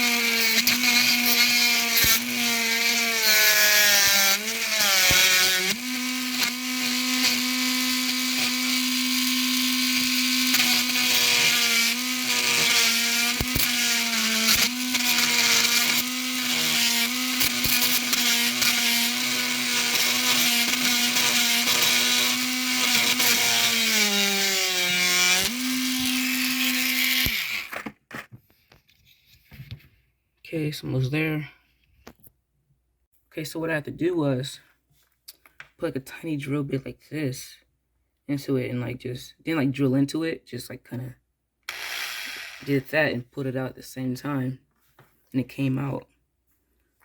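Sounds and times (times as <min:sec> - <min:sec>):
small high-speed drill running: 0:00.0 - 0:27.9, 0:41.7 - 0:42.8.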